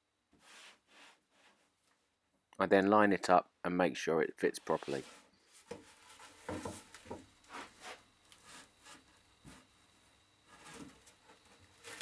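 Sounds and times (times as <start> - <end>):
board scraping and knocking on wood: 4.7 - 9.7, 10.4 - 12.0.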